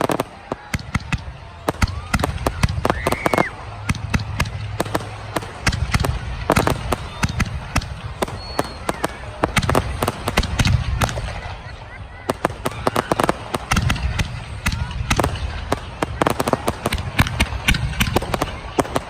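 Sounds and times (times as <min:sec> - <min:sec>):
fireworks bangs and crackling: 0:00.0 - 0:19.0
firework whistle: 0:01.7 - 0:04.1, 0:06.5 - 0:11.2.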